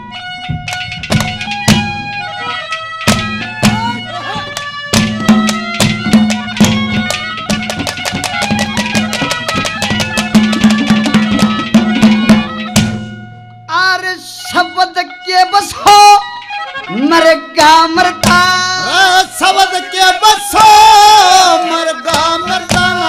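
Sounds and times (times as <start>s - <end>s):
held melody: 0.0s - 23.0s
hand drum strokes: 3.1s - 13.2s.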